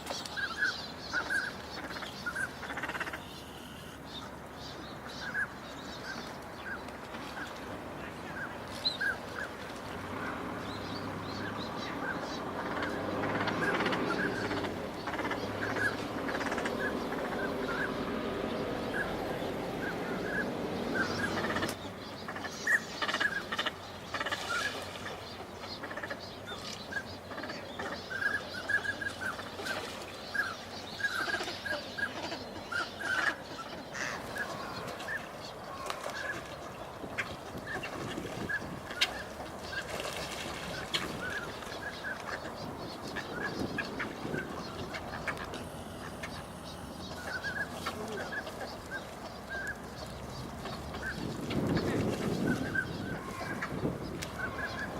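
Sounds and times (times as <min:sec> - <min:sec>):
waterbirds calling: 0:00.0 - 0:54.9
low drone: 0:44.1 - 0:48.4.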